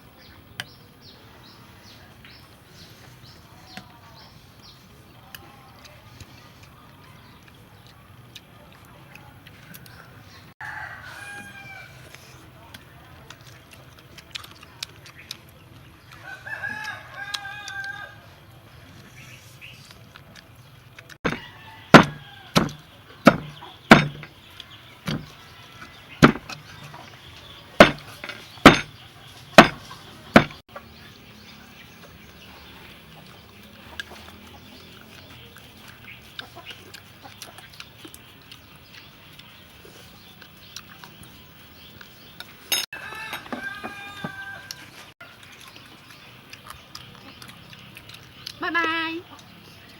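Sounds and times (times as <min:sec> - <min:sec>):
sharp loud knocks: 0:21.3 - 0:24.3, 0:25.1 - 0:25.4, 0:26.2 - 0:27.0, 0:27.8 - 0:28.9, 0:29.6 - 0:30.6.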